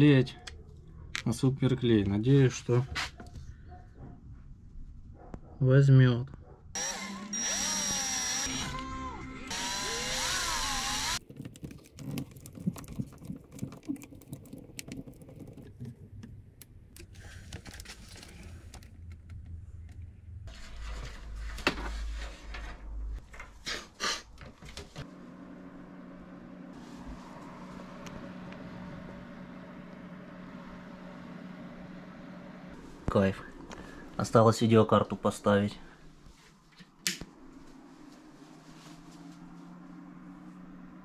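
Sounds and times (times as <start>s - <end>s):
power drill whining: 6.8s - 11.2s
low hum: 24.8s - 41.0s.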